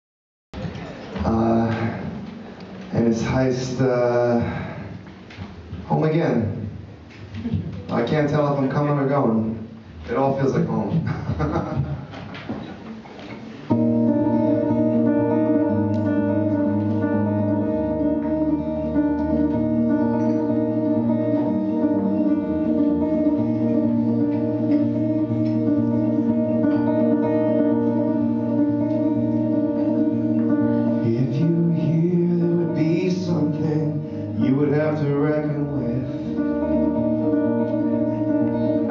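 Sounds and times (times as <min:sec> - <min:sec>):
guitar playing chords: 0:00.6 - 0:08.0, 0:13.4 - 0:38.9.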